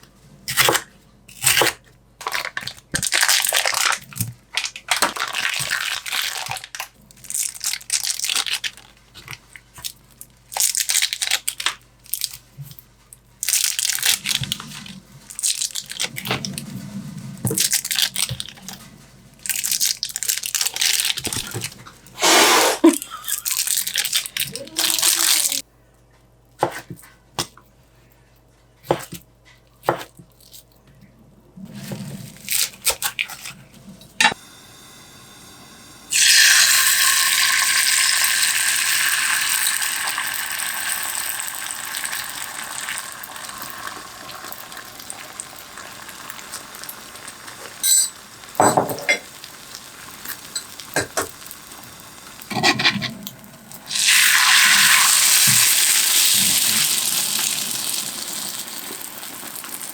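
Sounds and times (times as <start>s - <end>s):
food sizzling in a pan: 36.1s - 52.5s, 53.9s - 59.9s
utensils clinking on cookware: 47.8s - 49.3s.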